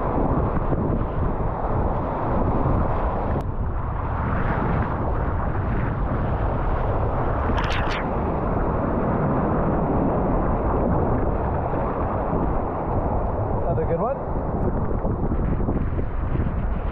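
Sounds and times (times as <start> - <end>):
wind buffeting microphone: 0.0 - 16.9.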